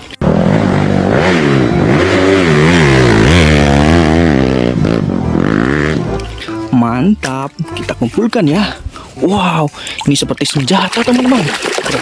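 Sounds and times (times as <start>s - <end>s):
dirt bike engine revving: 0.0s - 6.4s.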